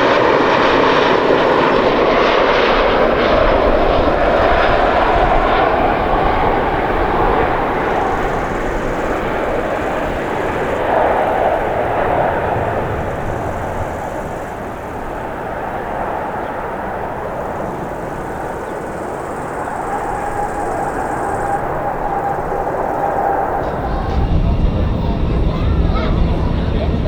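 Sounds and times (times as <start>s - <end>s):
jet engines roaring: 0.0s - 27.0s
faint high whine: 17.6s - 27.0s.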